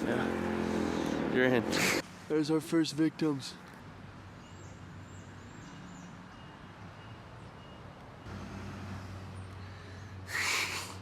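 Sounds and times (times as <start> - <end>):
engine humming: 8.2 - 11.0.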